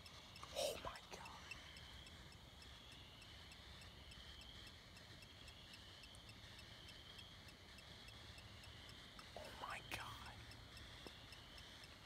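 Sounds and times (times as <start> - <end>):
light regular ticking: 0.0 - 12.0
night insects chirring: 0.0 - 12.0.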